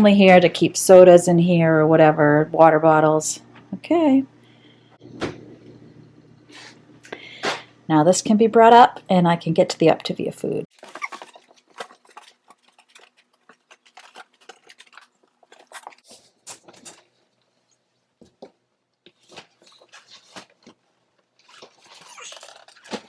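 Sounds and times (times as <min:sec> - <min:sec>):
food packets rustling: 0:10.7 - 0:23.0.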